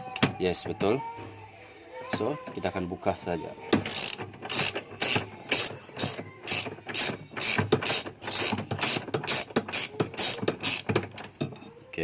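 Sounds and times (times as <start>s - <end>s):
ratchet wrench clicking: 3.8s - 11.3s.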